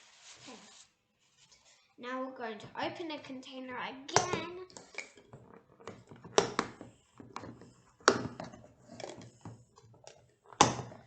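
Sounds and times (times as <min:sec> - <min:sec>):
plastic lid clicking and knocking: 0:04.2 - 0:09.6.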